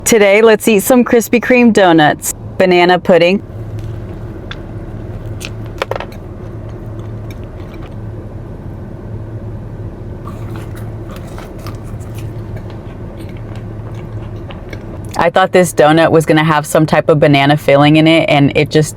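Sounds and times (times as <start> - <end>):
steady low hum: 0.0 - 18.9
biting and chewing donut: 3.5 - 8.1, 10.2 - 15.2.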